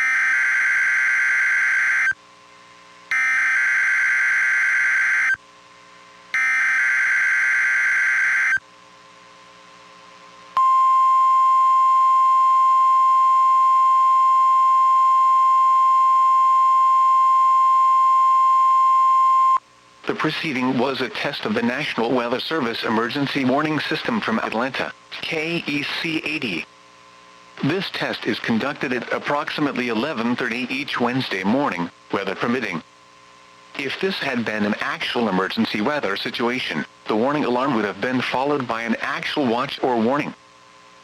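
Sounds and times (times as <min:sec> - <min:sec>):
single-pitch warning alarm tone: 0:03.1 - 0:05.4, 0:06.3 - 0:08.6, 0:10.6 - 0:19.6.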